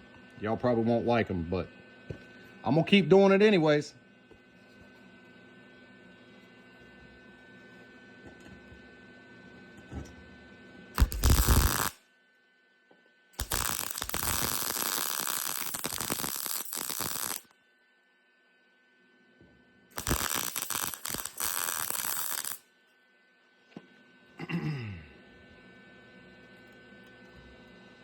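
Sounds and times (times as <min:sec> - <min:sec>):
welding arc crackling: 0:11.0 - 0:12.0, 0:13.4 - 0:17.5, 0:19.9 - 0:22.6.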